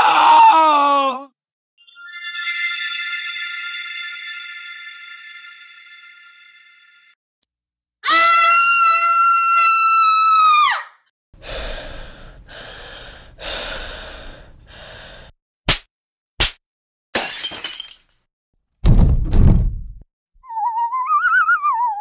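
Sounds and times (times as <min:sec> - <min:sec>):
loud breathy gasps: 0:11.4 - 0:15.3.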